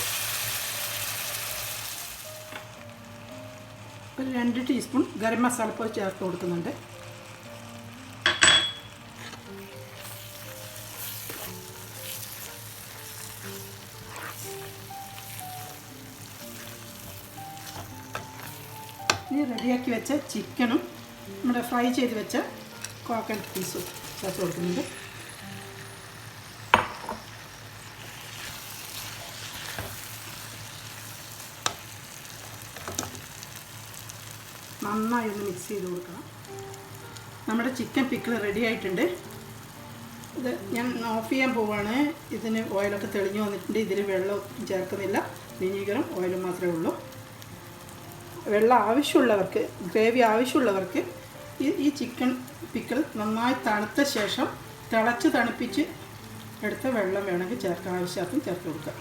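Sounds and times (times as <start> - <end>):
spices sizzling in a pan: 0.0 - 59.0
metallic clink: 8.3 - 8.9.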